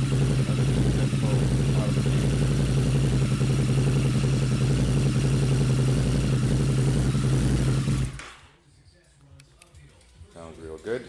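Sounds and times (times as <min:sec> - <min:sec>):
motorcycle engine idling: 0:00.0 - 0:08.2.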